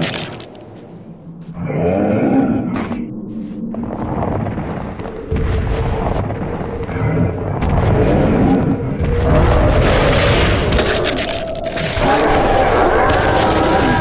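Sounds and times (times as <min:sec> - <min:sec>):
booming explosion rumble: 0:04.1 - 0:10.8.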